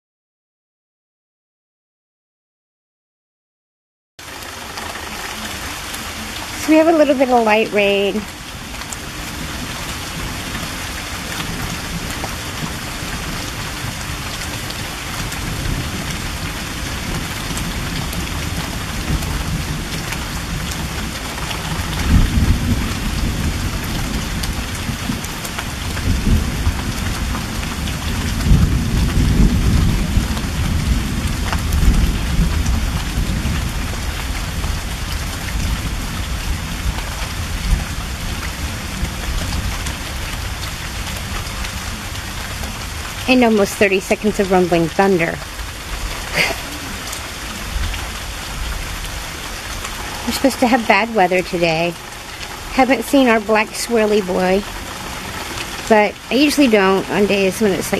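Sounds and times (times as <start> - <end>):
light rain falling: 4.2 - 57.9
rumbling thunder: 8.2 - 52.7.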